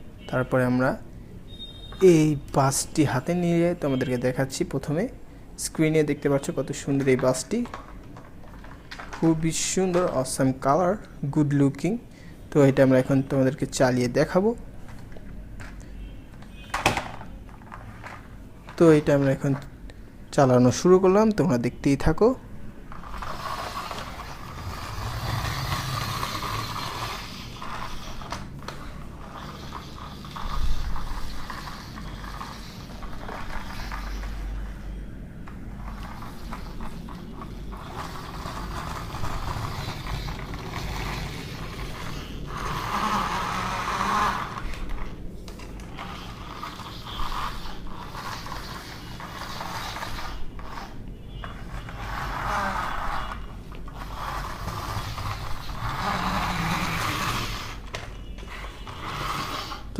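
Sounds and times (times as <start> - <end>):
toy wheels and gears whirring: 5.6 - 11.0, 15.6 - 19.7, 22.9 - 59.9.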